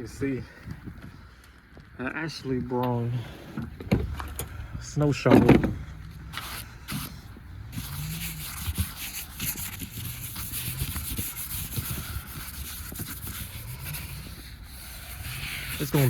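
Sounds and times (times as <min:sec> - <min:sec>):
scraping and crunching in snow: 0:06.3 - 0:16.0.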